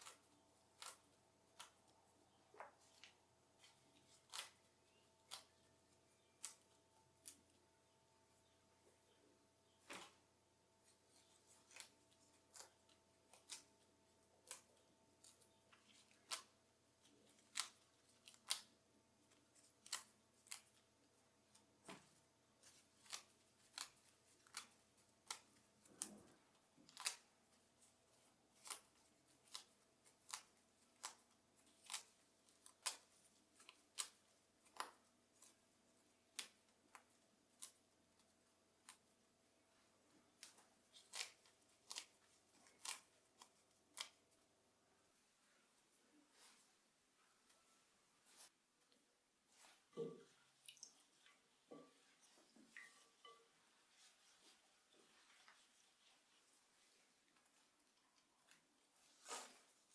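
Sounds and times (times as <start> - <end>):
scissors snipping: 0.8 - 1.8, 3.6 - 4.6, 5.2 - 5.6.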